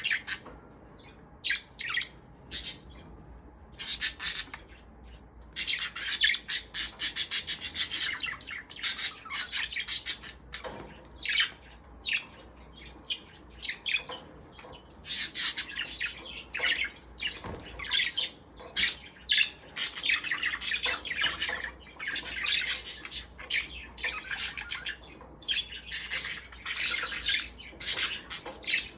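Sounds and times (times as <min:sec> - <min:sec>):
parrots chirping and squawking: 0:00.0 - 0:28.9.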